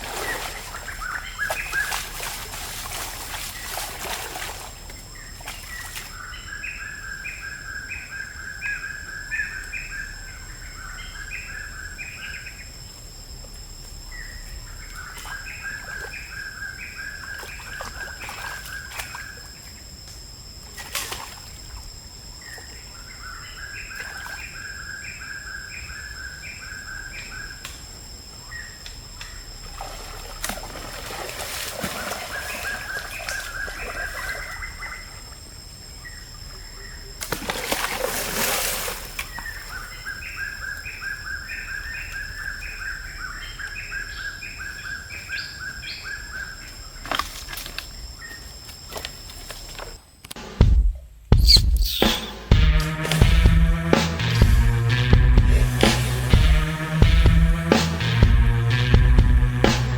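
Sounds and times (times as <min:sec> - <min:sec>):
bird calling repeated notes: 0:51.3 - 0:59.9
steady high-pitched tone: 0:51.4 - 0:59.9.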